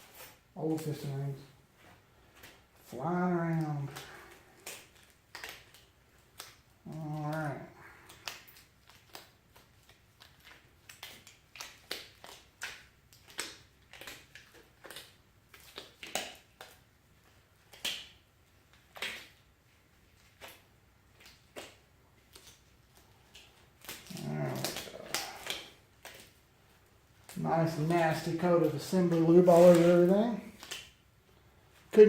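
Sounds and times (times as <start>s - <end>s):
low voice-like sound: 2.9s - 4.3s, 6.8s - 7.9s, 24.1s - 25.7s
sticky lube clicks and smacks: 3.5s - 26.5s, 27.2s - 31.0s.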